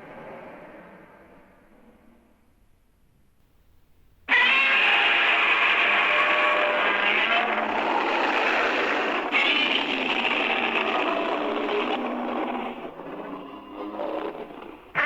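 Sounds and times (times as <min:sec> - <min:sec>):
monster roar screech: 0:04.3 - 0:15.0.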